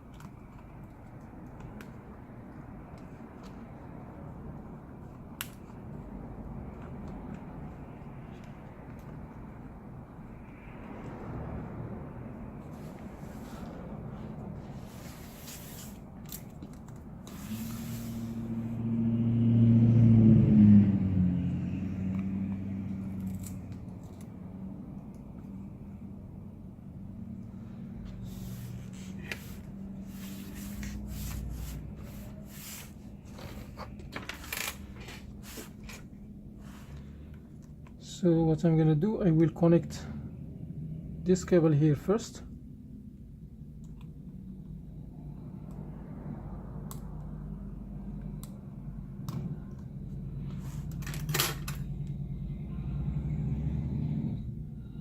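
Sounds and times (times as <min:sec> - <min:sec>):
hands rustling cables and parts: 0:00.0 - 0:10.5, 0:12.6 - 0:18.6, 0:22.1 - 0:25.8, 0:27.4 - 0:38.1, 0:48.4 - 0:52.2
steady low hum: 0:00.0 - 0:55.0.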